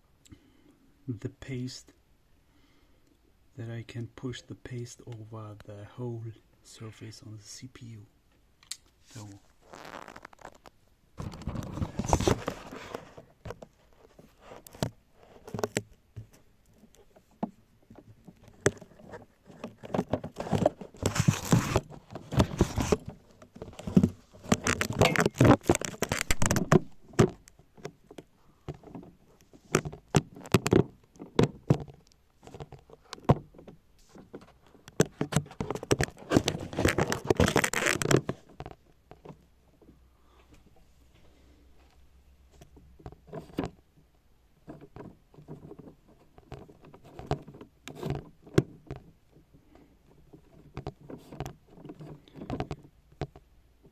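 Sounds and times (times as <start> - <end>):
metal and plastic scraping: 9.1 - 39.9, 42.5 - 43.9, 44.6 - 53.9.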